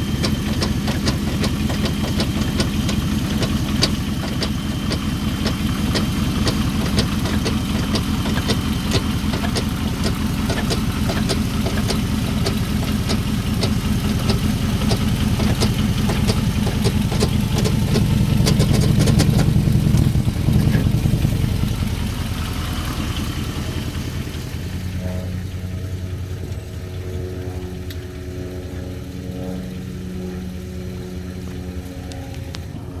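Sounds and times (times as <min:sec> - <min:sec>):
engine knocking: 0:00.0 - 0:32.9.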